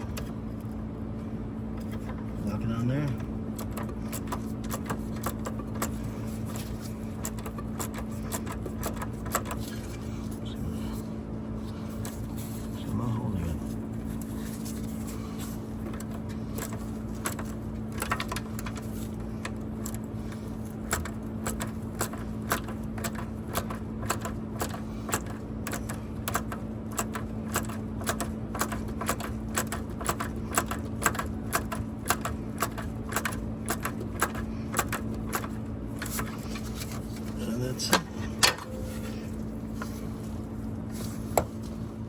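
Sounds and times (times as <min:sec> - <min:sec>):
steady low hum: 0:00.0 - 0:42.0
hand ratchet clicking: 0:07.2 - 0:09.6, 0:20.8 - 0:36.4.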